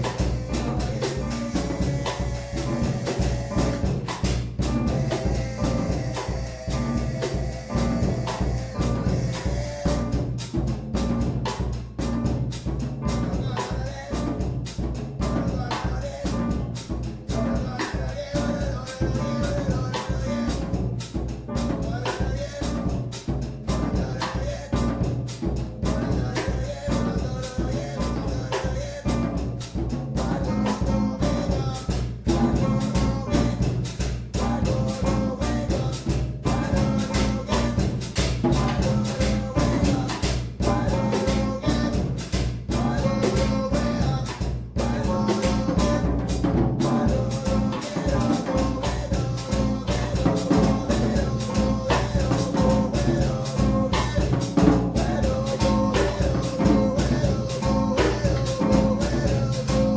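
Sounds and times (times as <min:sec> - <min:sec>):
drums and cymbals: 0:00.0 - 0:59.9.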